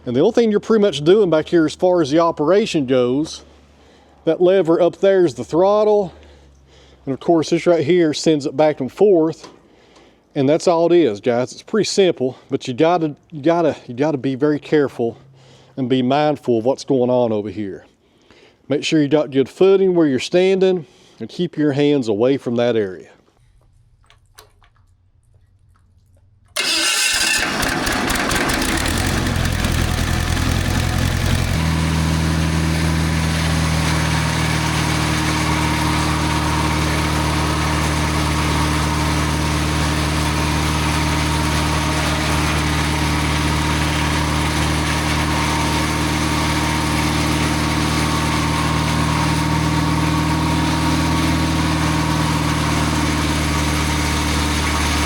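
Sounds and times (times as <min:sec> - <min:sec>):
sawmill engine humming: 0:26.6 - 0:55.0.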